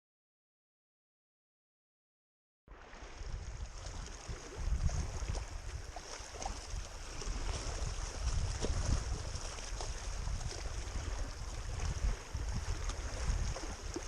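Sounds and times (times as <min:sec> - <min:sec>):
wind buffeting microphone: 0:02.8 - 0:14.0.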